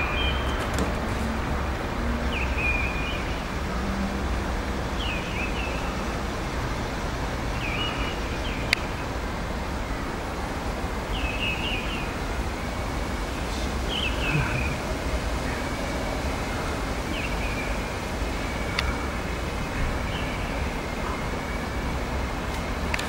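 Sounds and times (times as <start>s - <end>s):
rumbling background noise: 0.0s - 23.0s
bird chirping: 13.5s - 14.9s.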